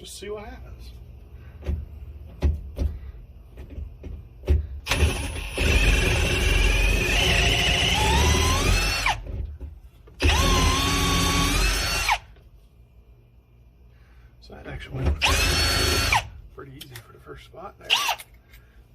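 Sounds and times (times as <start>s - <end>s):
power drill whining: 4.9s - 9.3s, 10.2s - 12.4s, 15.2s - 16.3s, 17.9s - 18.3s.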